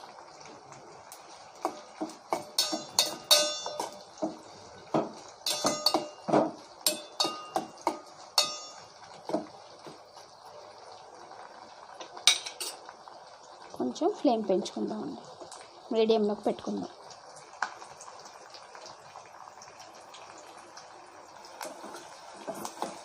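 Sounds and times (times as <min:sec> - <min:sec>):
oil frying hiss: 0:00.0 - 0:23.0
metal spoon scraping steel pan: 0:01.6 - 0:04.0, 0:05.4 - 0:06.3.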